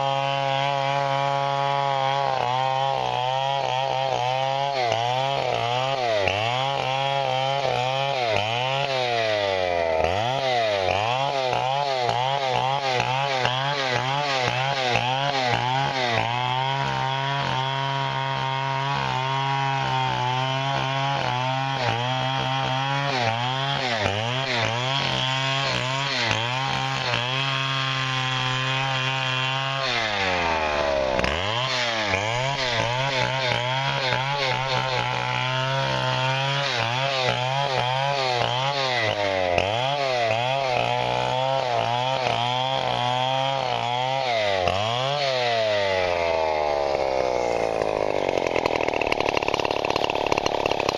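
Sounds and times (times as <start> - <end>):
engine-driven saw cutting timber: 0.0 - 50.9.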